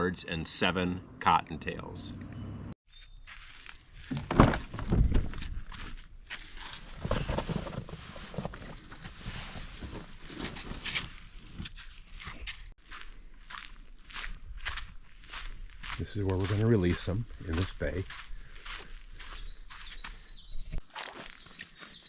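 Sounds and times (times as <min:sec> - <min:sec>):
footsteps on crunchy ground: 0:02.9 - 0:22.0
thumps and rustles: 0:04.0 - 0:12.6.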